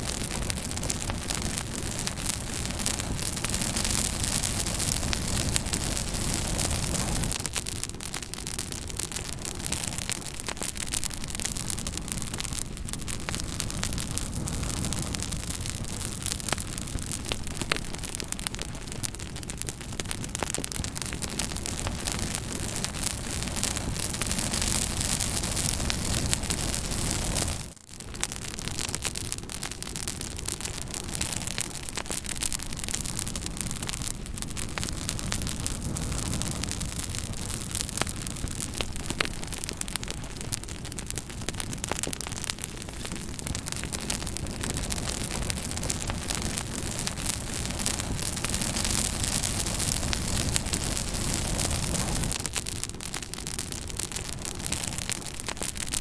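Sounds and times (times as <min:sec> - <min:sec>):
fire crackling: 0:00.0 - 0:56.0.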